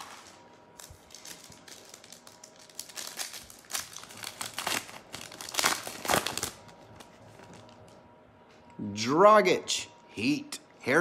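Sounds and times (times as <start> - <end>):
card pack wrapper crinkling and tearing: 0.0 - 7.6.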